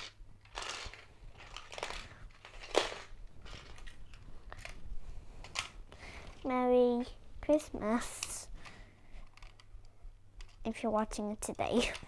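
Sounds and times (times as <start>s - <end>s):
plastic toys and packaging rustling: 0.0s - 12.0s.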